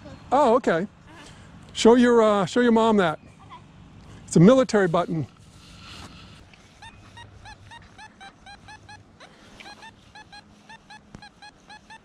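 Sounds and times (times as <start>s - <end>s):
distant geese honking: 4.9s - 12.0s.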